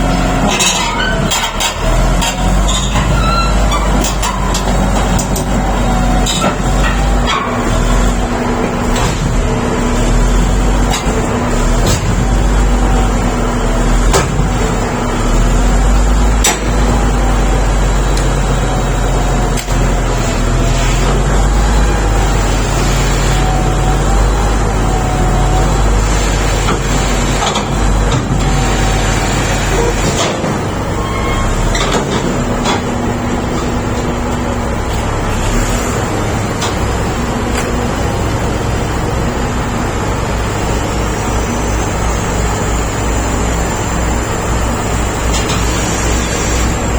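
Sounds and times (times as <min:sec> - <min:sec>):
bulldozer diesel engine running: 0:00.0 - 0:46.9.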